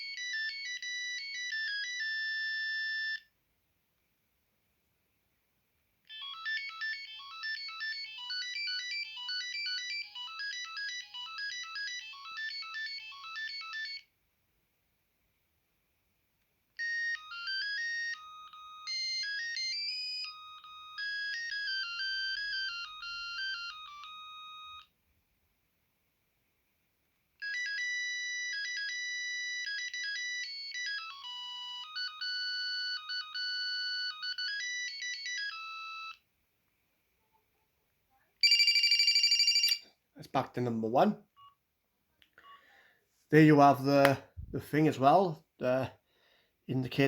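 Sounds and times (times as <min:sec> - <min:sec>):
mobile phone ringtone melodies: 0:00.0 - 0:03.3, 0:06.1 - 0:14.1, 0:16.8 - 0:24.9, 0:27.4 - 0:36.2, 0:38.4 - 0:39.8.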